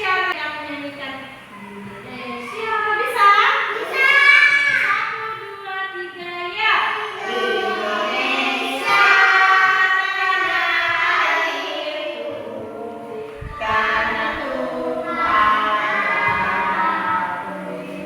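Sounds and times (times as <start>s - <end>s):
child singing: 7.0s - 18.0s.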